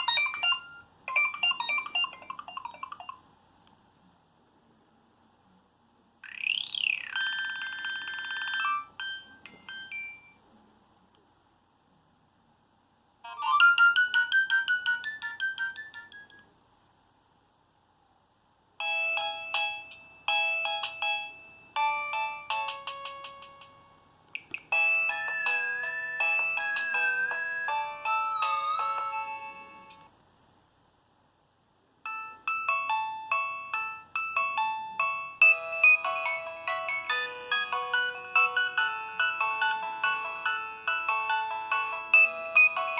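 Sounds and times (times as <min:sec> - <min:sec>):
mobile phone ringtone melodies: 0:00.0 - 0:03.2, 0:06.2 - 0:10.4, 0:13.2 - 0:16.5, 0:18.8 - 0:30.1, 0:32.1 - 0:42.9.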